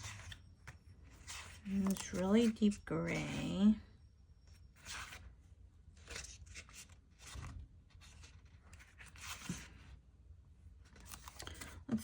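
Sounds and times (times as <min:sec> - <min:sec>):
paper sheets rustling and crinkling: 0:00.0 - 0:03.6, 0:06.0 - 0:09.9, 0:10.9 - 0:12.0.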